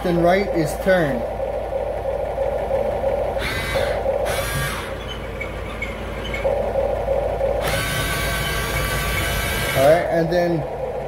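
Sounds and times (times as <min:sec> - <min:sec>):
shifting motor whine: 0:00.0 - 0:11.0
toy excavator motors whirring: 0:03.4 - 0:06.5, 0:07.6 - 0:10.0.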